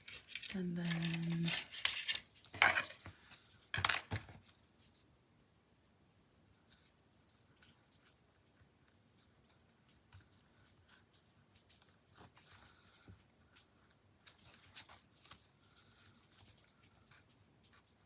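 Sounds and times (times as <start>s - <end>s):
paper rustling: 0.0s - 5.0s, 9.3s - 18.0s.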